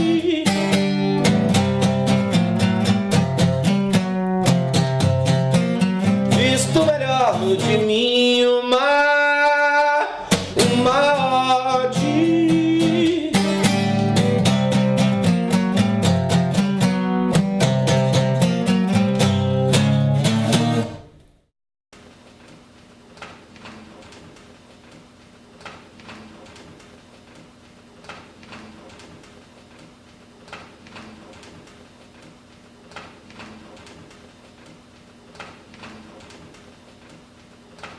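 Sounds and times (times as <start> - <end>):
person singing: 0.0 - 1.3, 6.3 - 14.0
strummed acoustic guitar: 0.0 - 21.1
record clicks: 22.4 - 37.9.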